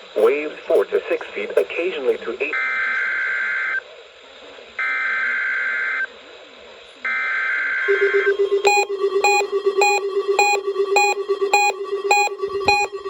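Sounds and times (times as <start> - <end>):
pulsing beep: 7.8 - 13.0
steady alert tone: 7.8 - 13.0.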